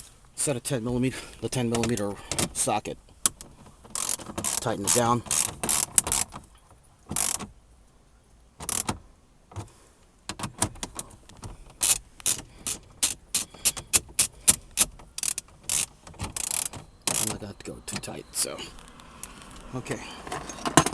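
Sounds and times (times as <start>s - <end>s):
ratchet wrench clicking: 4.0s - 6.3s, 11.8s - 17.3s.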